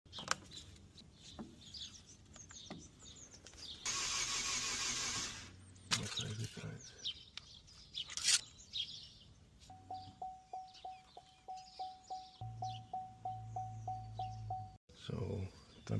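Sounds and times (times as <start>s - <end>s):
birds chirping: 0.1s - 3.9s, 5.5s - 15.9s
car engine cranking without starting: 3.9s - 6.4s.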